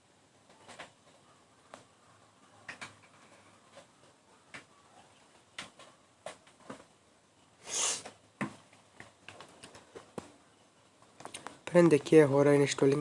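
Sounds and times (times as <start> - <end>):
faint clicks and ticks: 0.4 - 6.9, 8.6 - 11.8
short hiss: 7.6 - 8.2.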